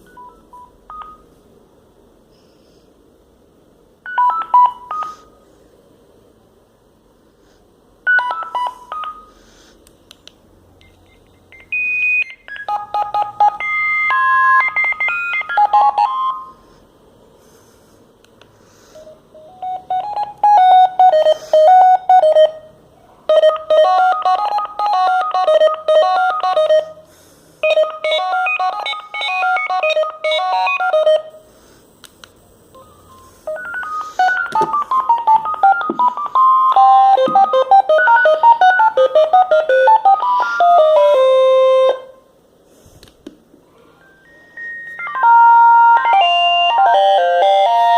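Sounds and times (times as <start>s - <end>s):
mobile phone ringtone melodies: 8.1s - 9.4s, 11.5s - 16.6s, 19.3s - 22.7s, 23.3s - 27.0s, 27.6s - 31.4s, 32.8s - 42.1s, 44.0s - 47.9s.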